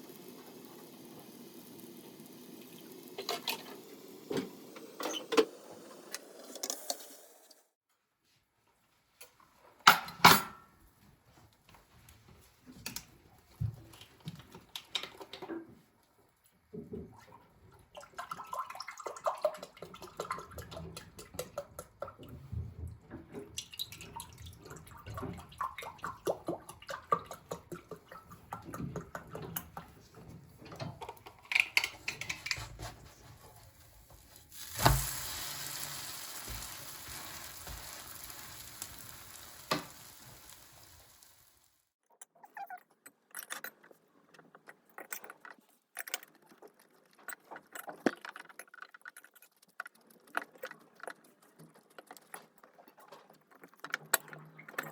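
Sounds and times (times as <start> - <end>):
dishes and utensils clinking: 9.9 - 10.7
steady hiss: 34.3 - 41.7.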